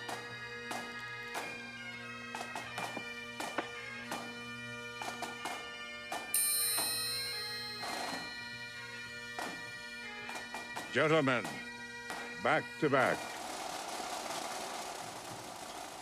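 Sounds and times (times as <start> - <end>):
bagpipes playing: 0.0 - 15.8
bright ring: 6.4 - 8.5
drum strokes: 13.0 - 16.0.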